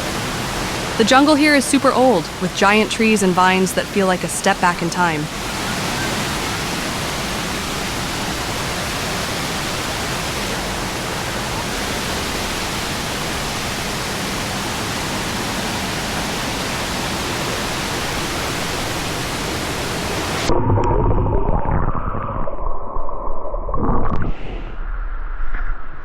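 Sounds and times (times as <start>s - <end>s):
waterfall rushing: 0.0s - 20.5s.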